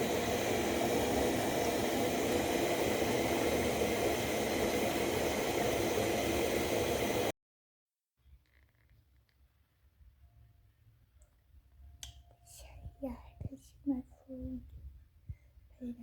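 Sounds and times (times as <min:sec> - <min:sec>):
steady hissing noise: 0:00.0 - 0:07.3.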